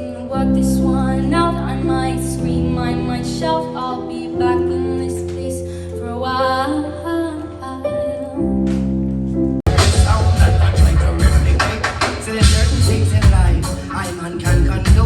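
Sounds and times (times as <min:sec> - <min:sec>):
low bass notes: 0:08.7 - 0:15.0
guitar: 0:09.7 - 0:15.0
person singing: 0:09.7 - 0:15.0.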